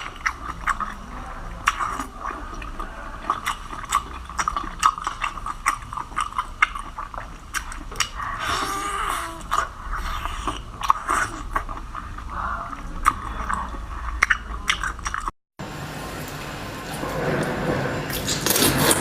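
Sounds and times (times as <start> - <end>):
mouth clicks and smacks: 0.0 - 1.0, 1.6 - 15.3
person chewing: 0.0 - 15.4, 18.1 - 19.0.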